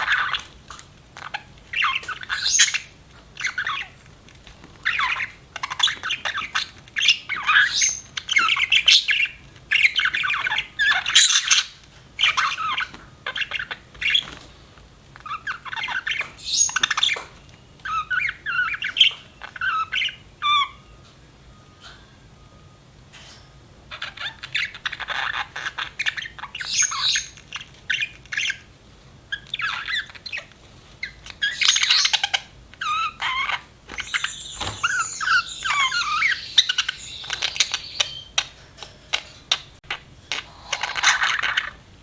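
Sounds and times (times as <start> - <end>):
budgerigars chattering and squawking: 0.0 - 4.0, 4.8 - 14.5, 15.2 - 20.8, 23.9 - 28.7, 29.3 - 41.8.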